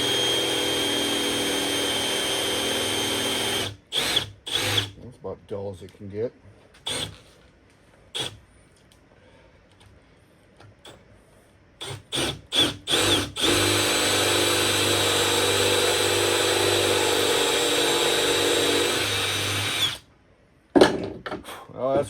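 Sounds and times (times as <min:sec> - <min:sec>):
power drill boring into wood: 0:00.0 - 0:05.0, 0:06.9 - 0:07.2, 0:08.2 - 0:08.4, 0:11.8 - 0:20.0.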